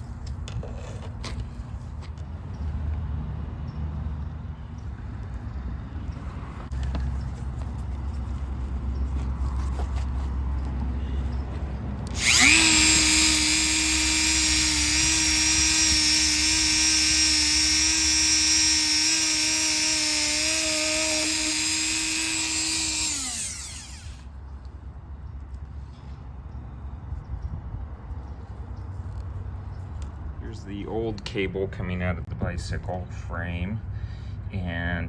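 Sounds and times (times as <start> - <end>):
rotary tool whining: 6.2 - 24.4.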